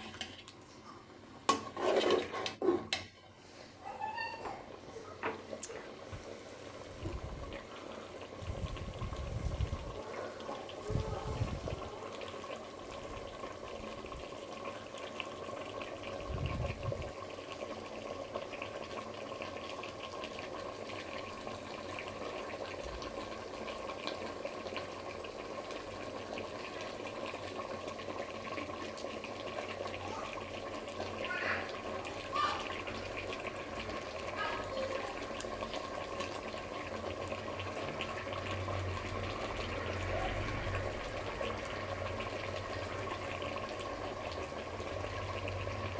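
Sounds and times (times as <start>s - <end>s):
steady watery noise: 0.0s - 45.9s.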